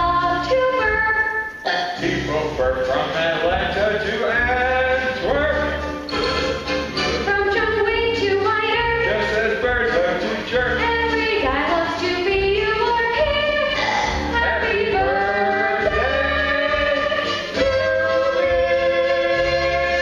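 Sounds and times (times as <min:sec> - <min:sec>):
instrumental accompaniment: 0:00.0 - 0:20.0
cast singing: 0:12.6 - 0:20.0.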